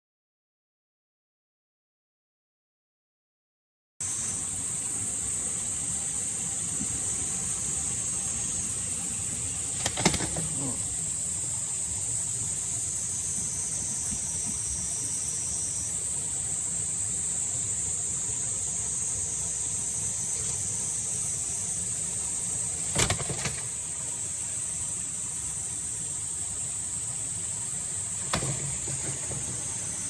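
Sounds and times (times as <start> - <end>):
high-pitched insect drone: 4.0 - 30.0
sharp clattering: 9.8 - 10.6, 22.8 - 23.8, 28.2 - 30.0.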